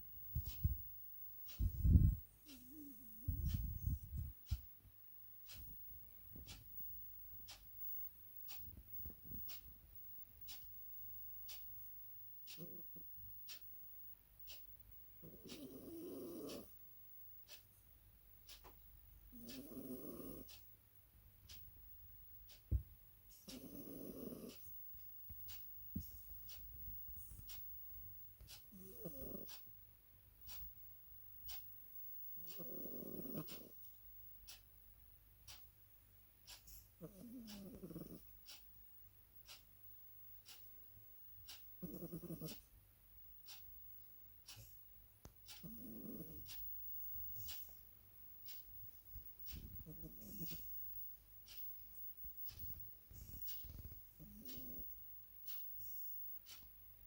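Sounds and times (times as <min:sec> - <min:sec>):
faint even ticks: 0:00.3 - 0:00.8, 0:01.4 - 0:04.7, 0:05.4 - 0:09.8, 0:10.4 - 0:10.7, 0:11.4 - 0:11.8, 0:12.4 - 0:13.7, 0:14.4 - 0:16.8, 0:18.4 - 0:20.7, 0:22.4 - 0:27.7, 0:28.4 - 0:29.7, 0:30.4 - 0:30.8, 0:31.4 - 0:31.7, 0:32.4 - 0:34.7, 0:35.4 - 0:35.7, 0:36.4 - 0:38.8, 0:39.4 - 0:39.7, 0:40.4 - 0:40.8, 0:41.4 - 0:42.7, 0:43.4 - 0:43.8, 0:44.4 - 0:47.8, 0:48.4 - 0:56.8
pet snoring: 0:01.5 - 0:04.1, 0:12.5 - 0:13.0, 0:15.2 - 0:16.8, 0:19.3 - 0:20.6, 0:23.3 - 0:24.7, 0:28.5 - 0:29.6, 0:32.4 - 0:33.9, 0:36.6 - 0:38.6, 0:41.5 - 0:42.6, 0:45.5 - 0:46.6, 0:49.4 - 0:50.8, 0:52.5 - 0:56.1.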